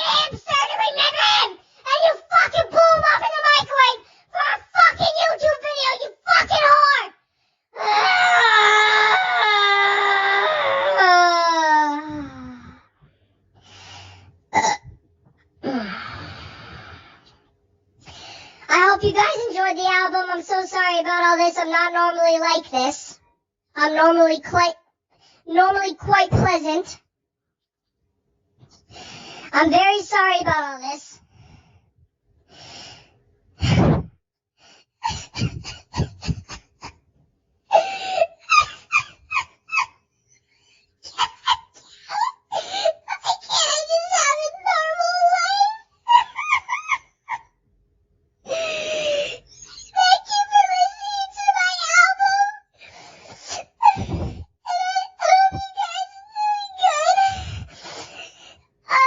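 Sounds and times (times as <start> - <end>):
person crying and sobbing: 7.8 - 12.8, 15.6 - 16.6, 35.0 - 37.0, 37.7 - 47.6, 48.5 - 51.8, 52.8 - 59.0.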